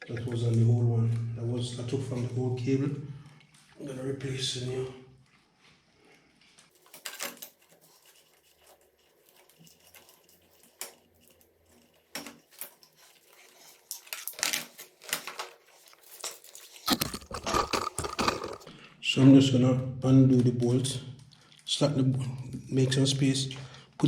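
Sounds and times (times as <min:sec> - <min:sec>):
cable and plastic clips rustling: 0:12.2 - 0:18.7.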